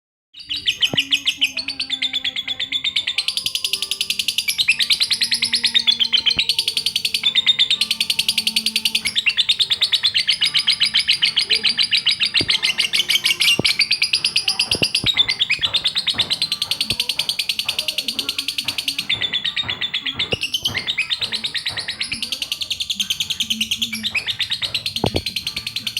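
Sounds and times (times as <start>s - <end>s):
lovebird chirping: 0.4s - 25.9s.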